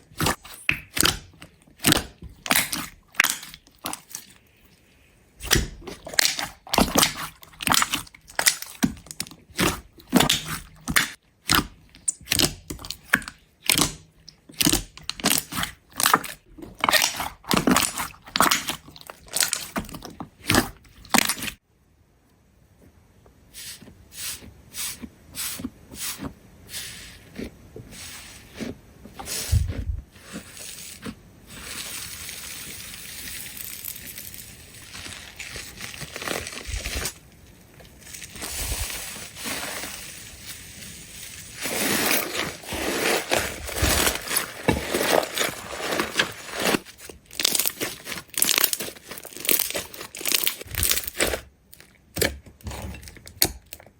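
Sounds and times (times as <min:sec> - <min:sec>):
slime crunchy pops and crackles: 0:05.4 - 0:21.6, 0:46.7 - 0:51.5
slime crinkling hiss: 0:37.8 - 0:46.9.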